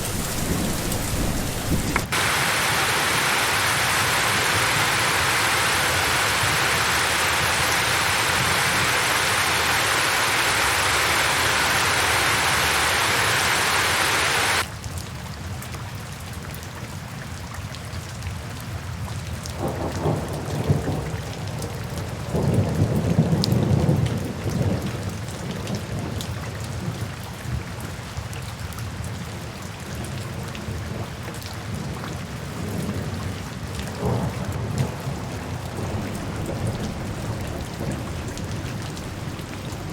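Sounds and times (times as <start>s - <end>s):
heavy rain hissing: 0.0s - 14.7s, 34.0s - 39.9s
rolls of thunder: 34.0s - 39.9s.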